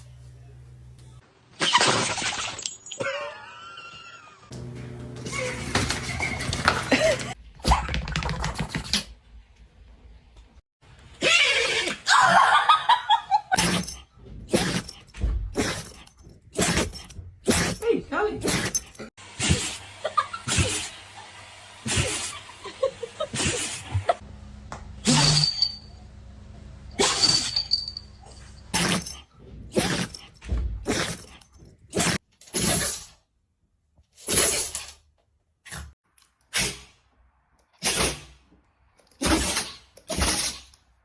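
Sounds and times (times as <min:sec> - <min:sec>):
puppy sneezing: 0:37.8 - 0:38.3.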